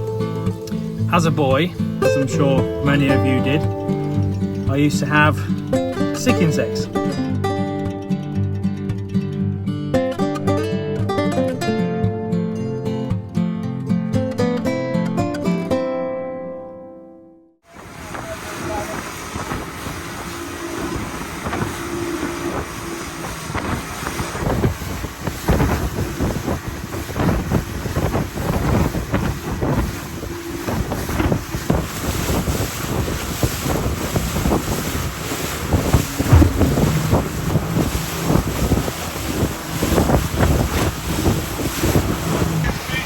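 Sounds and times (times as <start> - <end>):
waves lapping and splashing: 0.0 - 9.4, 17.7 - 43.0
wind buffeting microphone: 17.7 - 43.0.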